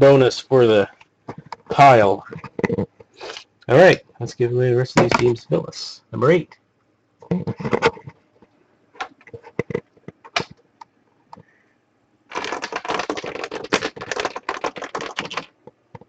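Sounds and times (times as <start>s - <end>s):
rapid clicking like typing: 12.3s - 16.0s.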